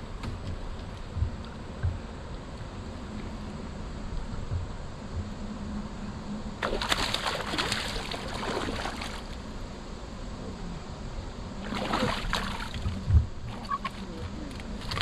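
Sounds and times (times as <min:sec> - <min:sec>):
steady low hum: 0:00.0 - 0:15.0
water splashing around a kayak: 0:06.6 - 0:09.7, 0:11.4 - 0:15.0.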